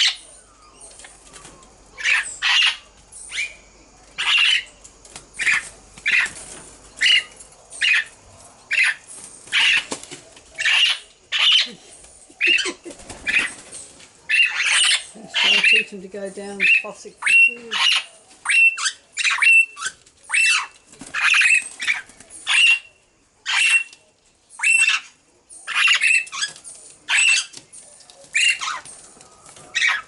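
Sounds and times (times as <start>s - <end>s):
parrots squawking: 0.0s - 0.3s, 2.0s - 3.6s, 4.2s - 4.7s, 5.4s - 6.3s, 7.0s - 8.1s, 8.7s - 9.9s, 10.6s - 13.7s, 14.3s - 15.9s, 16.6s - 24.0s, 24.6s - 27.6s, 28.3s - 28.9s, 29.7s - 30.0s.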